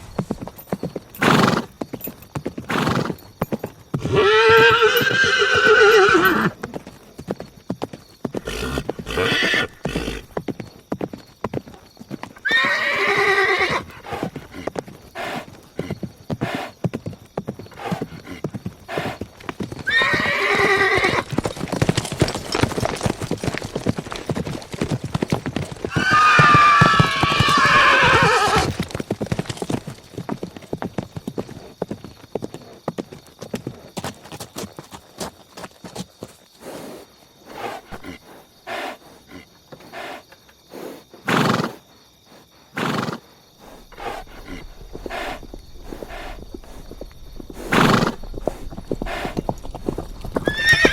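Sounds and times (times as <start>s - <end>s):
horses whinnying: 0.0s - 2.0s, 2.6s - 3.2s, 3.9s - 6.7s, 8.3s - 10.4s, 12.2s - 16.7s, 17.7s - 29.8s, 41.3s - 41.8s, 42.8s - 50.9s
hooves clip-clopping: 0.0s - 41.0s, 42.4s - 50.9s.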